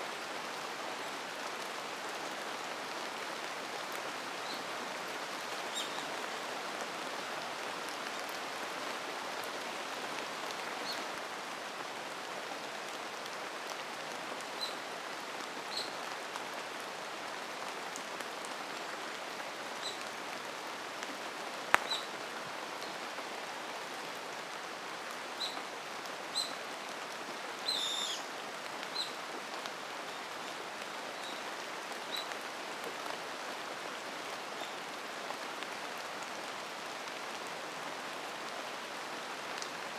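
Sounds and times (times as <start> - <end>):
steady rain: 0.0 - 39.9
bird warbling call: 27.7 - 28.3.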